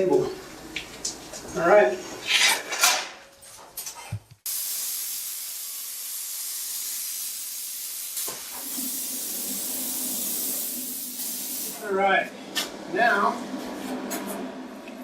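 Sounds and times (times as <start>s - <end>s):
plasma cutter hissing: 4.5s - 12.0s.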